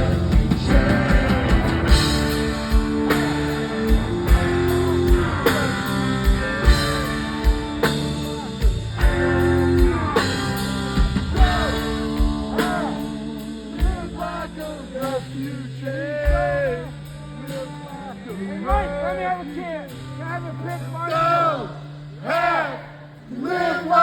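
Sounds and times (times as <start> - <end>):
electric guitar: 0.0 - 19.2
steady drum beat: 0.0 - 22.5
bass guitar: 0.0 - 23.3.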